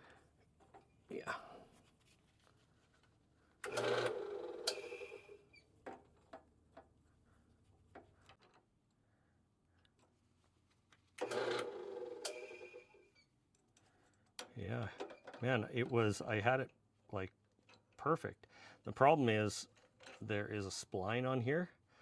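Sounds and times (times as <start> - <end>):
drill press motor spinning: 3.6 - 5.5, 11.2 - 12.9.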